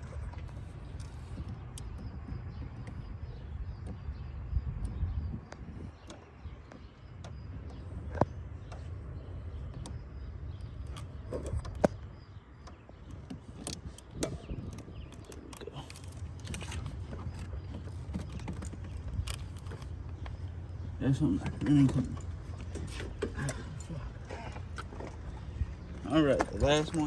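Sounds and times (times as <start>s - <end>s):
hands handling hoses and clamps: 13.1s - 20.5s.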